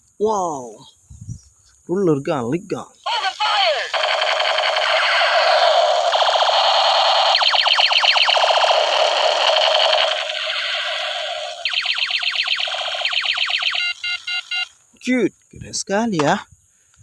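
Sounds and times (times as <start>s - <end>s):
toy gun buzzing tone: 3.1s - 14.7s
rapid falling laser zaps: 3.9s - 14.0s.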